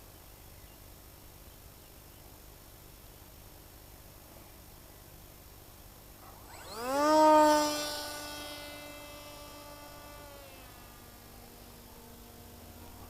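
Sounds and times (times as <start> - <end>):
electric motor and propeller whine: 6.2 - 13.0.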